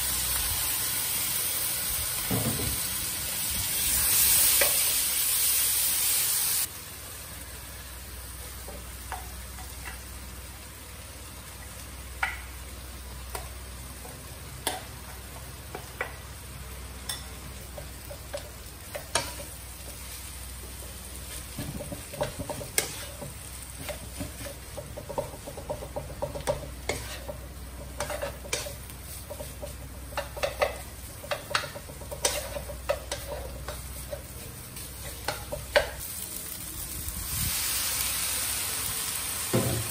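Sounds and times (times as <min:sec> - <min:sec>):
food sizzling in a pan: 0:00.0 - 0:39.9
spatula scraping and tapping pan: 0:08.6 - 0:10.1, 0:17.0 - 0:20.1, 0:21.2 - 0:36.0.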